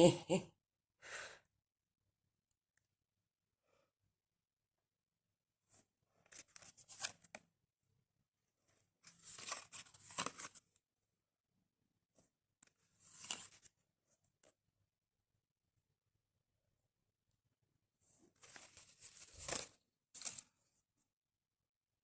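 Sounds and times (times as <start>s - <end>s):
paper rustling: 6.2s - 7.5s, 9.0s - 10.7s, 12.6s - 13.8s, 18.2s - 20.8s.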